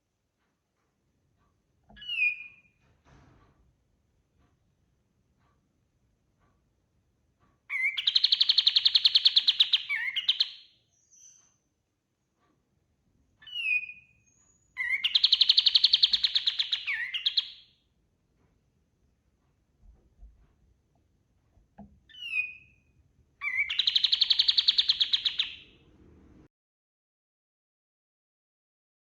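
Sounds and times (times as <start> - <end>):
songbird trilling: 7.7 - 11.4, 13.4 - 17.6, 23.4 - 25.7.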